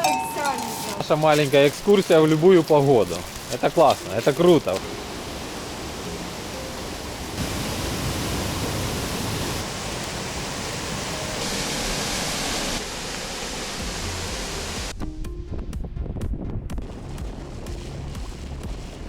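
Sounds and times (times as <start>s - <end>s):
waterfall rushing: 0.0s - 14.9s.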